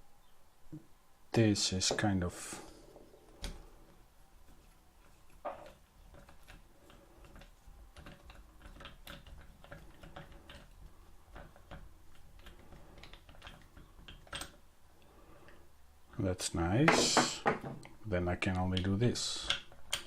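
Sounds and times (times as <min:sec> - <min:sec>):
plastic parts clicking and tapping: 0:05.4 - 0:14.6, 0:17.0 - 0:20.0.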